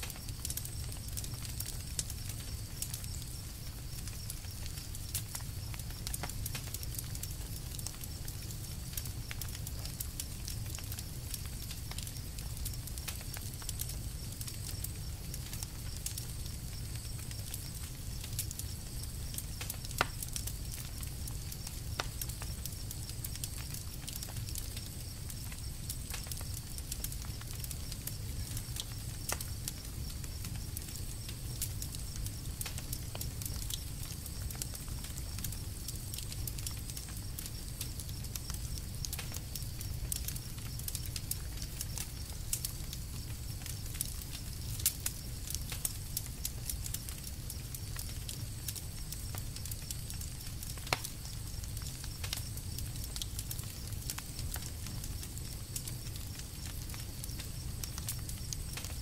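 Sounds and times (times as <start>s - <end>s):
campfire crackling: 0.0s - 59.0s.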